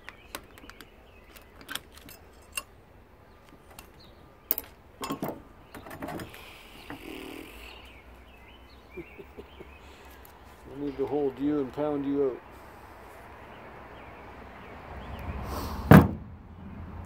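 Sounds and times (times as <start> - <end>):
faint bird chirps: 5.6 - 11.2.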